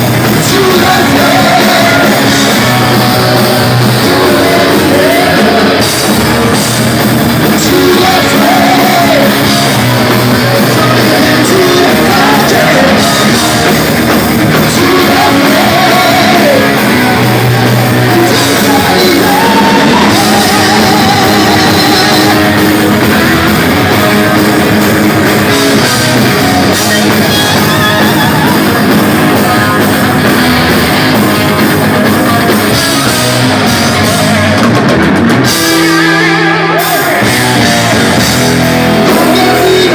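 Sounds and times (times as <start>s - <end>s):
person singing: 0.0s - 6.8s, 7.4s - 23.0s, 35.7s - 39.9s
drums: 0.0s - 39.9s
loud electric guitars: 0.0s - 39.9s.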